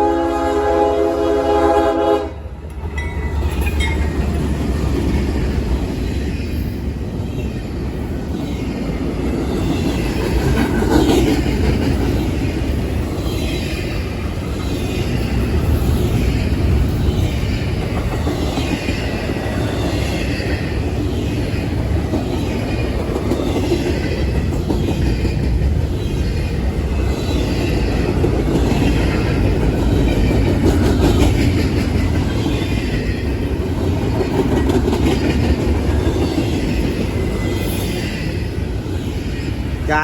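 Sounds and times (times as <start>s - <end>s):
train wheels rumbling on rails: 0.0s - 40.0s.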